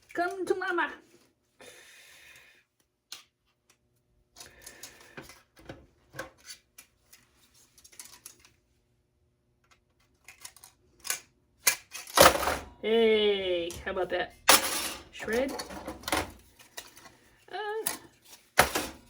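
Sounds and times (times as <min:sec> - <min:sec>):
plastic and metal parts clicking: 0:09.6 - 0:12.3.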